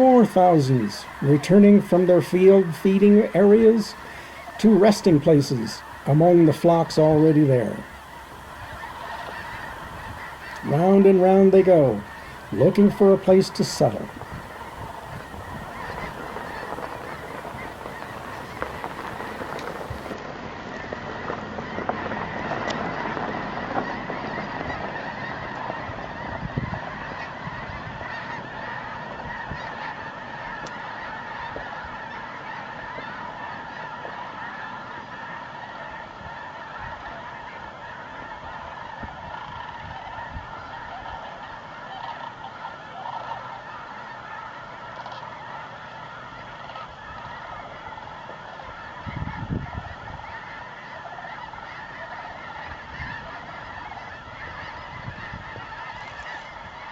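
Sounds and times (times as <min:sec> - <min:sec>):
flock of geese honking: 0:00.0 - 0:56.9.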